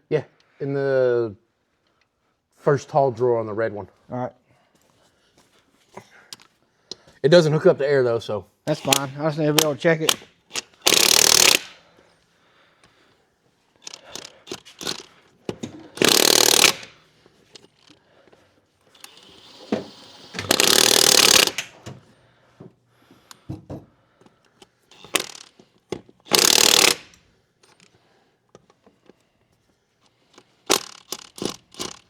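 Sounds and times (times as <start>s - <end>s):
impact wrench hammering: 8.7s - 11.8s, 13.8s - 16.9s, 19.0s - 21.9s, 24.9s - 27.9s, 30.7s - 32.0s.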